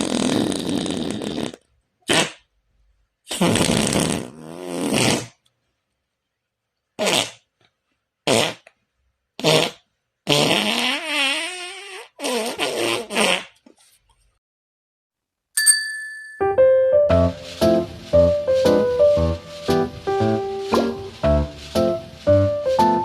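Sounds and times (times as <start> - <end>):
imitation fart sounds: 0.0 - 2.5, 3.2 - 5.4, 7.0 - 7.5, 8.2 - 8.7, 9.4 - 13.6.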